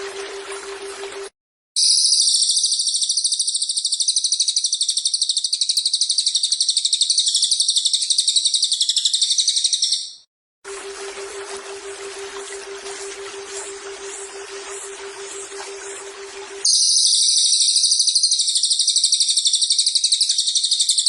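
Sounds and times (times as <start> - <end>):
bird high-pitched trill: 1.8 - 10.3, 16.6 - 21.0.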